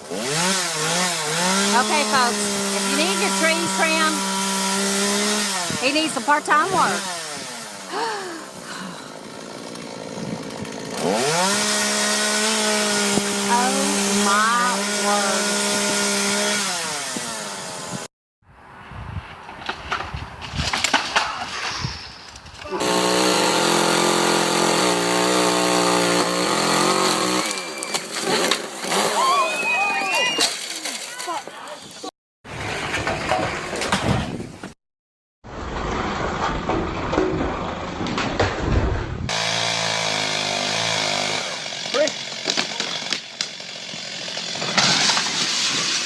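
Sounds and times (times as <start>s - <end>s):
chainsaw revving: 0.0s - 18.1s, 22.7s - 29.5s, 39.3s - 45.6s.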